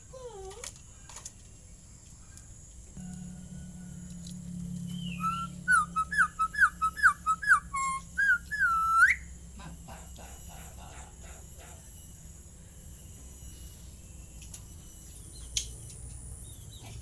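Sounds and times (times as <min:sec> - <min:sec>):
short whistled notes: 0:04.8 - 0:09.2.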